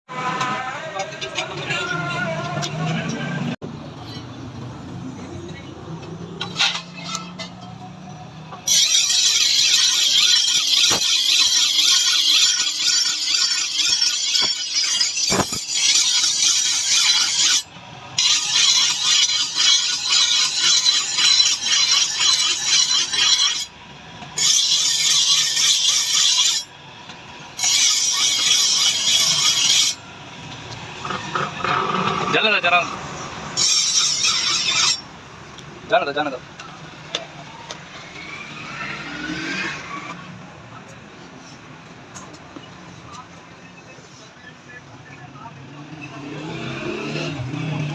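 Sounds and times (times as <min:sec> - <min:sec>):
knife blade scraping on abrasive: 0:06.4 - 0:07.6, 0:08.7 - 0:23.7, 0:24.4 - 0:26.7, 0:27.6 - 0:30.0, 0:33.6 - 0:35.1.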